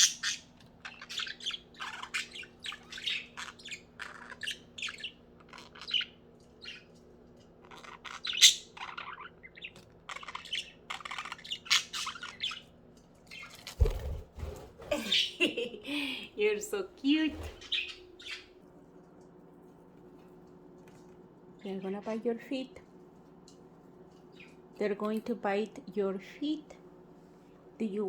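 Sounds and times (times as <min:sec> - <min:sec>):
budgerigars chirping and chattering: 0:00.0 - 0:07.0, 0:07.6 - 0:12.7, 0:17.3 - 0:18.6.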